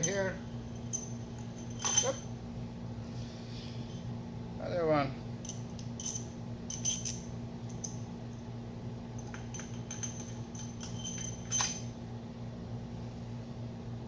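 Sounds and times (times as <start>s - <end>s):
metal bolts and washers clinking: 0.0s - 2.3s, 5.5s - 8.1s, 9.2s - 12.0s.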